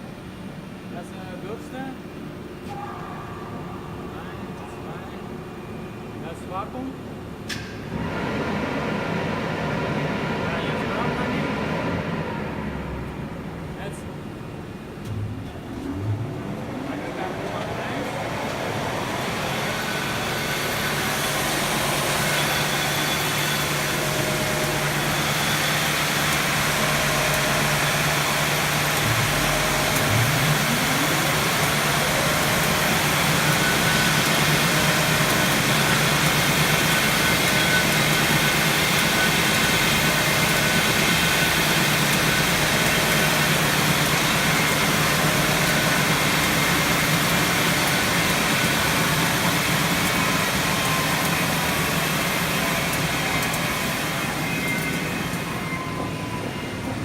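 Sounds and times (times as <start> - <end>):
industrial machine hum: 0.0 - 57.0
motor whine spinning up: 14.8 - 56.6.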